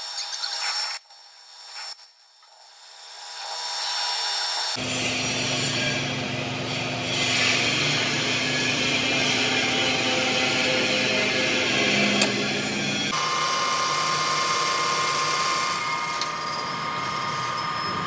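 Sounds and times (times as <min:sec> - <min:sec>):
hissing scrape of cutting tool: 0:03.2 - 0:13.4
lathe machine hum: 0:04.8 - 0:18.0.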